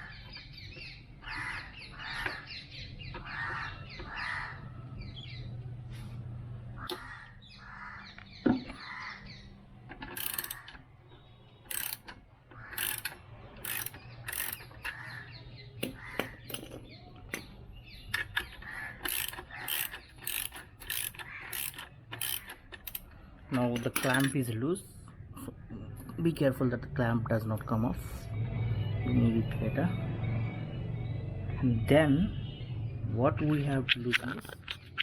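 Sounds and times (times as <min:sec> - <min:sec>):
ratchet wrench clicking: 0:10.1 - 0:10.8, 0:11.7 - 0:12.1, 0:12.7 - 0:14.9, 0:18.4 - 0:23.1, 0:23.8 - 0:24.4.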